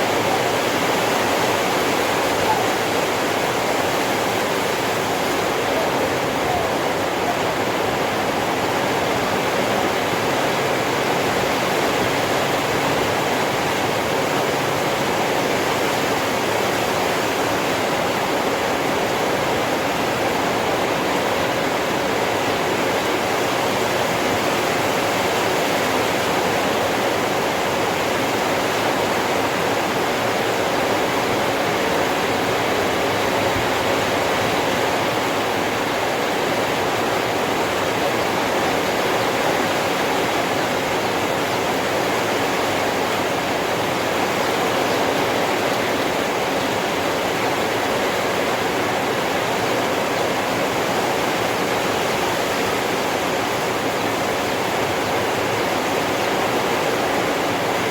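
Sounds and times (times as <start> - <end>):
heavy rain pouring: 0.0 - 57.9.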